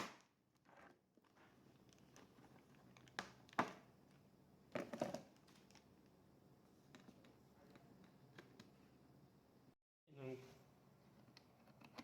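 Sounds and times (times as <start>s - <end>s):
plastic clicks and scraping: 11.2s - 12.0s.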